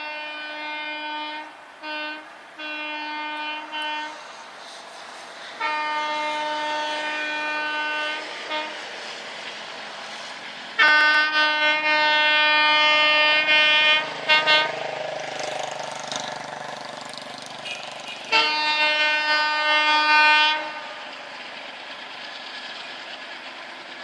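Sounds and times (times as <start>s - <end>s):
train horn blasts: 0.0s - 4.3s, 5.6s - 8.8s, 10.8s - 14.9s, 17.6s - 21.1s.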